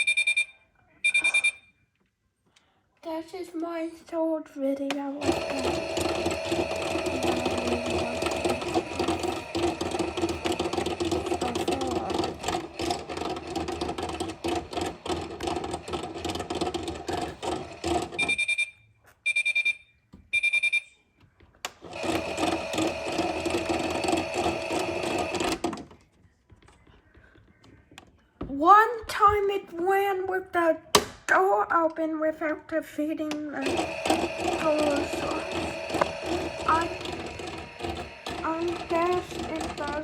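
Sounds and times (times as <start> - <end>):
short high beeps: 0.0 - 1.7
washing machine running: 5.2 - 18.4, 21.8 - 25.9, 33.6 - 40.0.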